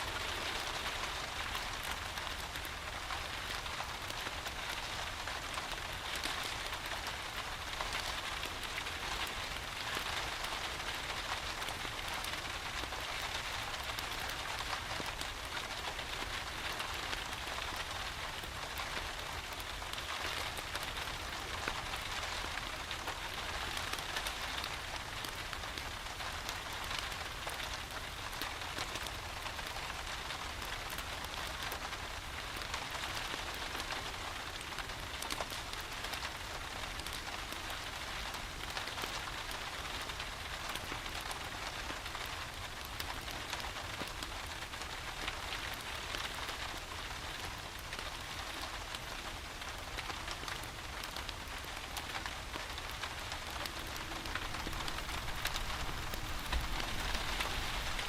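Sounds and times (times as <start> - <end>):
steady rain falling: 0.0 - 58.0
wood fire crackling: 42.0 - 58.0.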